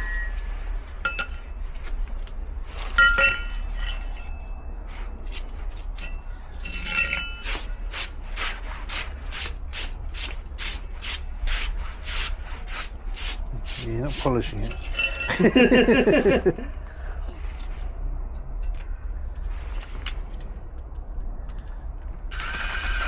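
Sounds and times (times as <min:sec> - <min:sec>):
metallic clinks: 0:02.8 - 0:04.6, 0:05.8 - 0:07.9, 0:14.6 - 0:17.2, 0:18.3 - 0:19.5
filing rasping back and forth: 0:06.8 - 0:15.3.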